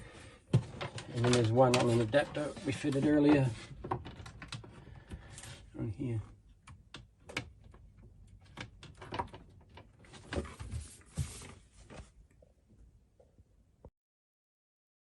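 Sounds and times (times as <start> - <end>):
rustling and scraping: 0.0 - 5.7, 8.9 - 12.2.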